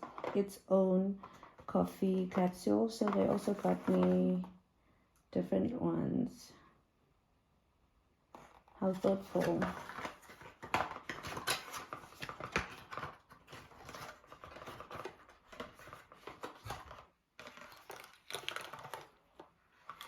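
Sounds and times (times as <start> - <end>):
packaging rustling: 8.4 - 20.0.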